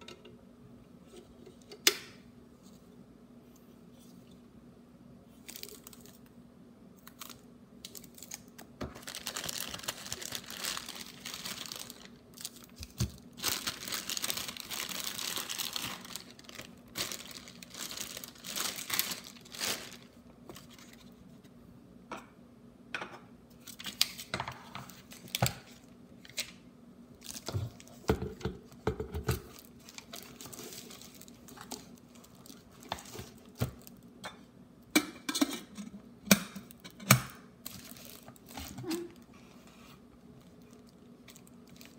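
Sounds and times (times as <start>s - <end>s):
packaging crinkling: 5.4s - 6.3s, 7.0s - 21.2s, 27.2s - 28.0s, 29.4s - 34.1s, 37.6s - 39.3s, 40.3s - 41.9s.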